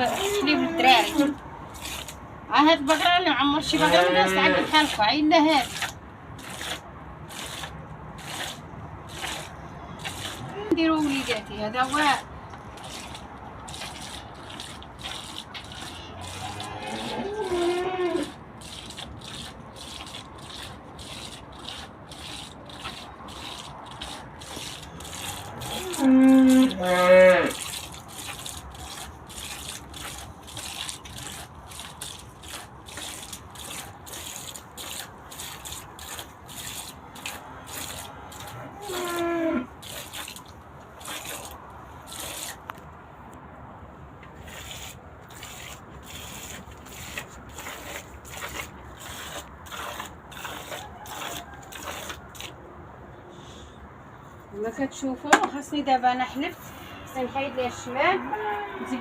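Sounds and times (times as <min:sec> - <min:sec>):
milk squirting into a pail: 0:00.0 - 0:02.2, 0:02.8 - 0:42.8, 0:44.4 - 0:52.6.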